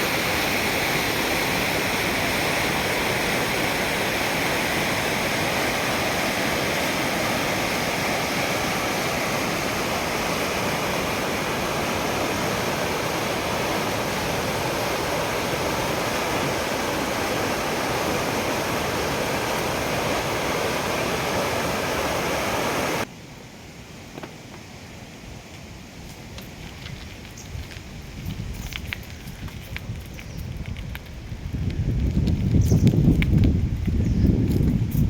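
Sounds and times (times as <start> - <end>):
water pouring over waterfall: 0.0 - 23.1.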